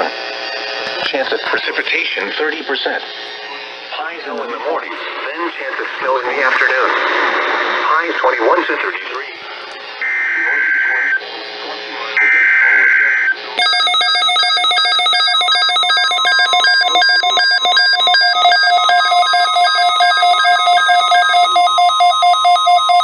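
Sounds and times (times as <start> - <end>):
pulsing electronic alert beeps: 12.2 - 23.0.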